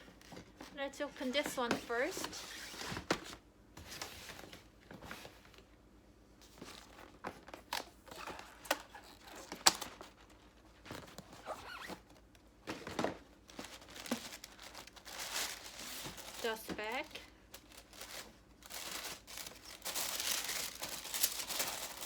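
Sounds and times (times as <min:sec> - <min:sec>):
paper packaging rustling: 0:06.4 - 0:22.0.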